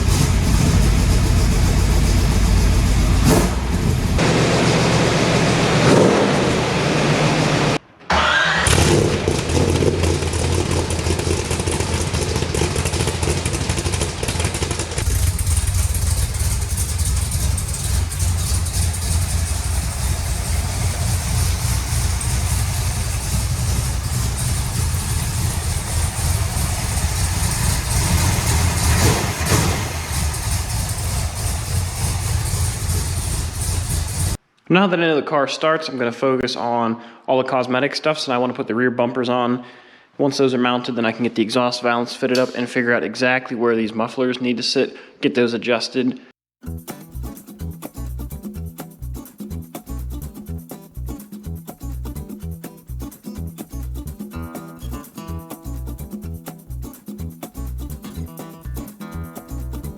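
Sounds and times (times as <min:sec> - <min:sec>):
car engine revving and idling: 0:00.0 - 0:07.8, 0:08.7 - 0:34.4.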